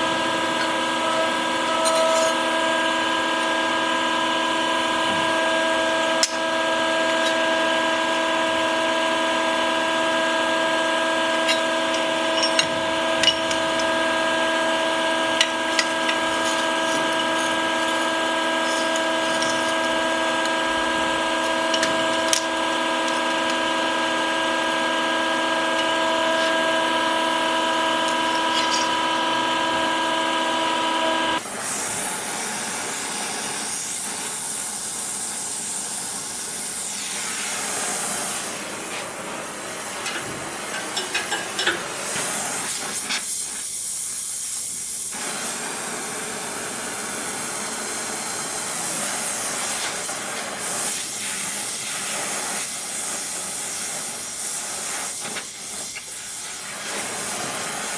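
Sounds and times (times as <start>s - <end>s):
power tool motor whining: 0.0s - 35.5s
hiss: 31.4s - 57.9s.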